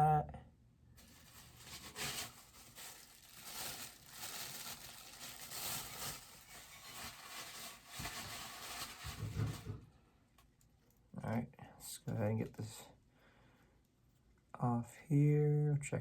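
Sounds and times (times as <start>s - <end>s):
plastic packaging crinkling: 1.0s - 9.8s.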